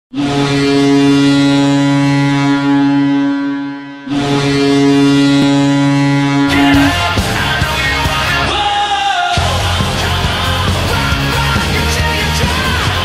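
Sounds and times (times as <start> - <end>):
goal horn blasts: 0.5 - 8.3.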